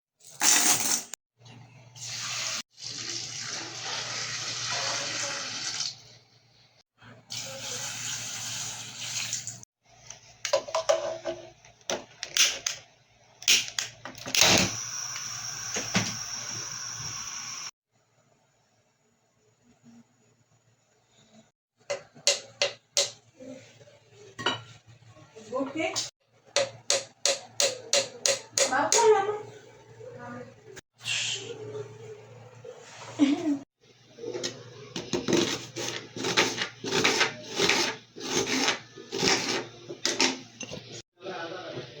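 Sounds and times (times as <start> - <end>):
water running from tap: 2.0 - 6.1, 7.3 - 9.6.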